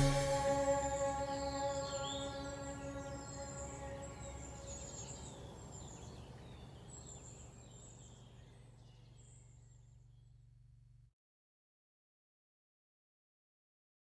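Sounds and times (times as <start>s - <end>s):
held musical tones: 0.0s - 4.7s.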